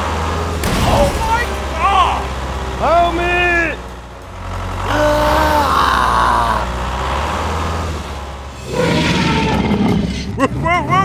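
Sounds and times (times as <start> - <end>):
engine low rumble: 0.0 - 10.9
rough loud noise: 0.5 - 4.8.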